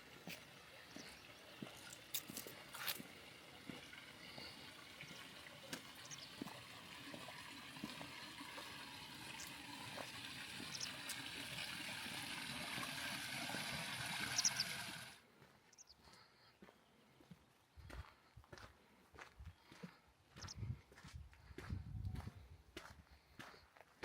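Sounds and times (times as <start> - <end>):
running water rushing: 0.0 - 15.2.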